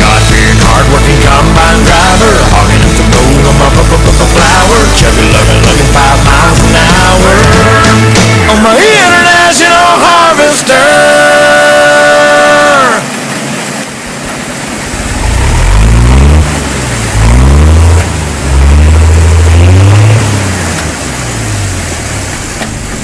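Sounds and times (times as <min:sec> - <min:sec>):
engine revving: 0:00.0 - 0:09.2, 0:14.7 - 0:23.0.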